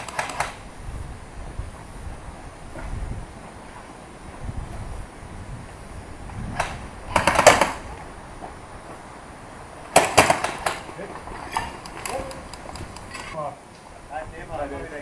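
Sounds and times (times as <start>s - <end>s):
airsoft guns firing: 0.0s - 0.6s, 6.6s - 7.9s, 9.9s - 11.0s.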